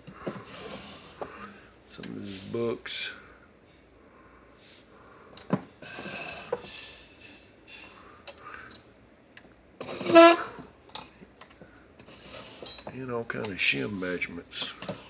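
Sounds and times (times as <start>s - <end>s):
loud squeak: 9.8s - 10.6s.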